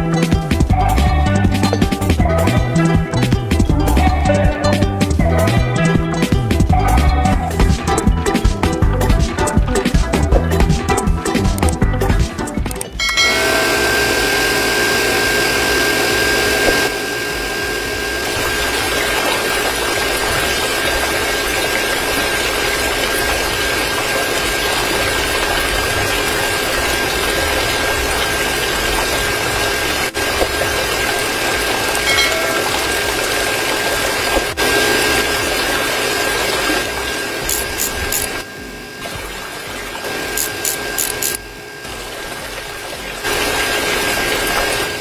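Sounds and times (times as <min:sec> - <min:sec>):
water rushing and splashing: 0:05.5 - 0:45.0
small electric pump motor whining: 0:12.8 - 0:45.0.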